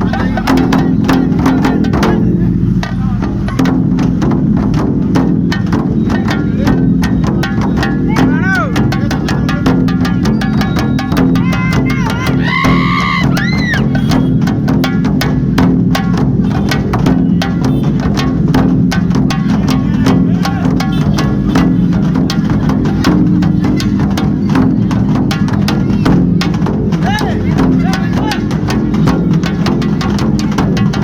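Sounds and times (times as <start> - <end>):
fast dense drumming: 0.0 - 31.0
whistle-like tones: 10.3 - 14.4.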